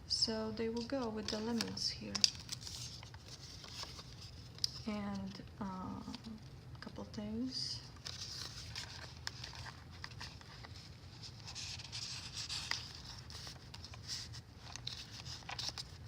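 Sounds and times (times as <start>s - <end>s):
steady low hum: 0.0s - 16.0s
paper rustling and sliding: 0.8s - 4.8s, 8.0s - 16.0s.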